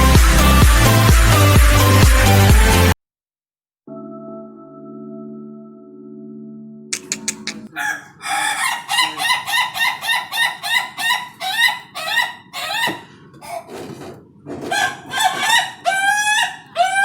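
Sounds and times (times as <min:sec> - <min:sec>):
intro music: 0:03.9 - 0:07.7
rooster crowing: 0:07.7 - 0:13.6.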